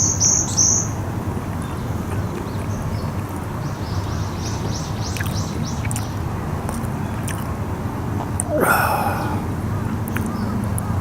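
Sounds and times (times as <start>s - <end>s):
songbird singing: 0.0s - 11.0s
low outdoor rumble: 0.8s - 11.0s.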